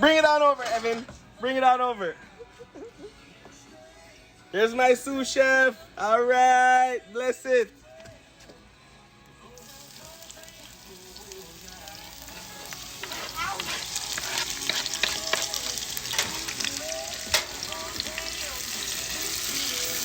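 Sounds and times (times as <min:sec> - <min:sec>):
peppers and onions sizzling: 0:09.5 - 0:20.0.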